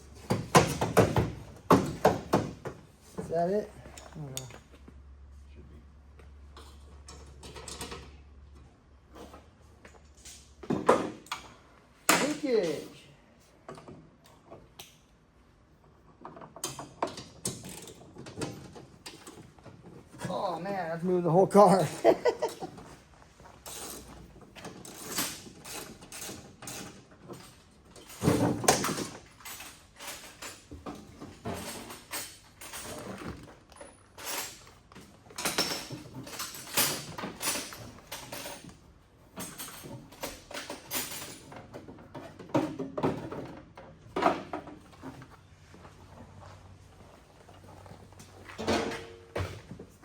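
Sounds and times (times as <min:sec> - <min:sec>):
hand tools clicking and scraping: 0:21.7 - 0:38.8.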